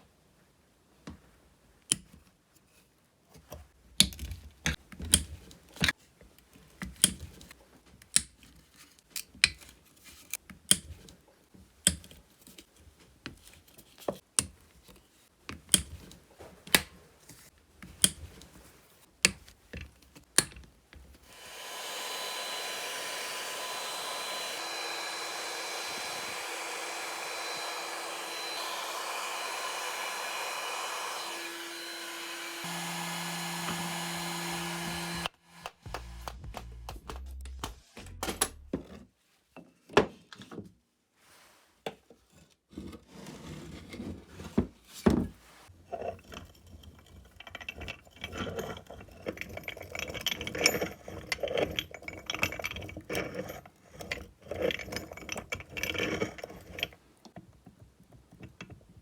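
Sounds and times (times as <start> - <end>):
electric blower motor whining: 21.3 - 36.9.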